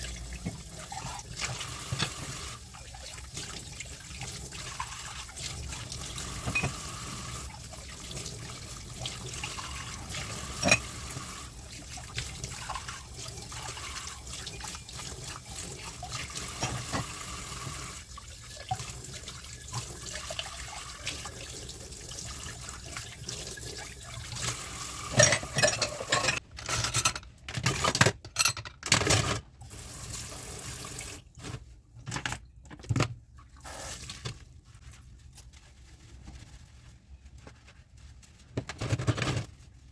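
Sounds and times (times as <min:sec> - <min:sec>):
tap water running: 0:00.0 - 0:26.4, 0:29.6 - 0:31.6, 0:33.5 - 0:34.4
dishware clinking: 0:10.5 - 0:10.9, 0:25.1 - 0:27.1.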